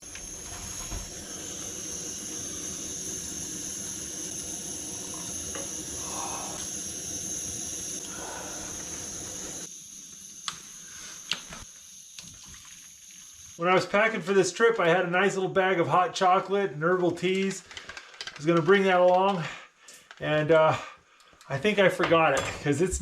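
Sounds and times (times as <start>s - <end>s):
rain hissing: 0.0s - 9.7s.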